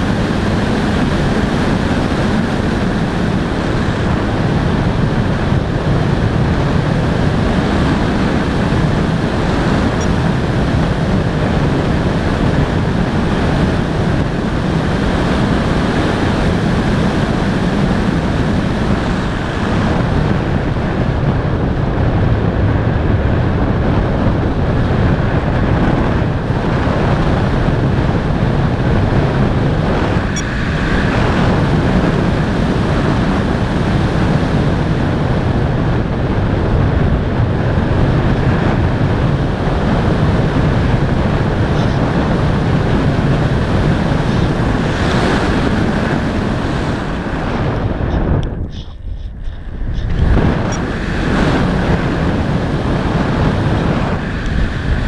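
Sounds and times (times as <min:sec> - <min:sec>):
wind buffeting microphone: 0:00.0 - 0:55.0.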